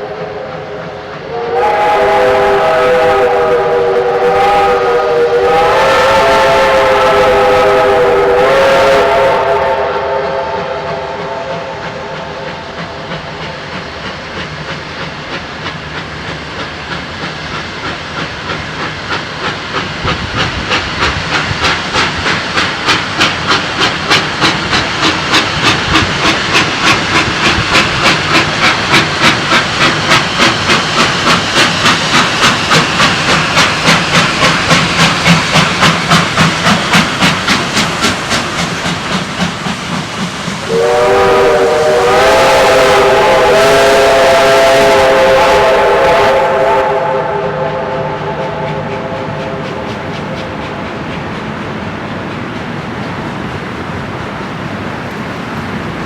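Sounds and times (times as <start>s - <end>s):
steam whistle: 0.0s - 13.8s, 40.6s - 49.9s
steam locomotive exhaust beats: 0.0s - 56.0s.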